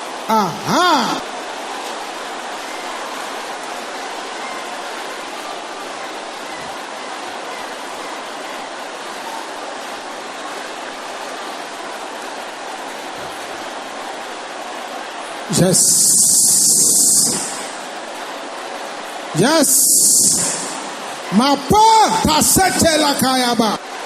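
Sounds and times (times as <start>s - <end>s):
congregation praying aloud: 0.0s - 24.0s.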